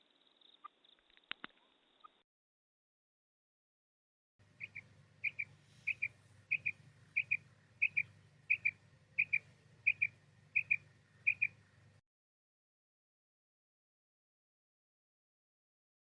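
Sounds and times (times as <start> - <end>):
quail calling: 4.4 - 11.8
faint low hum: 4.4 - 12.0.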